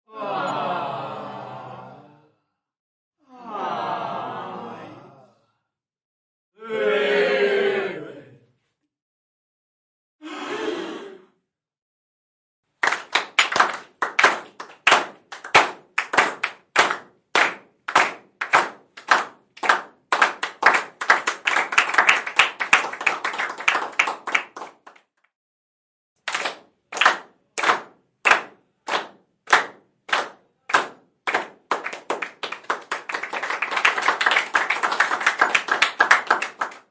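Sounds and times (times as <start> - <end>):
crowd clapping: 12.8 - 25.1, 26.3 - 36.9.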